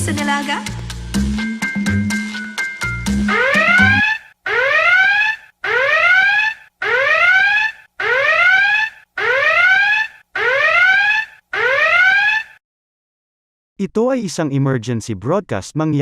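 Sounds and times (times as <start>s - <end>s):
electronic whoop alarm: 3.3s - 12.6s.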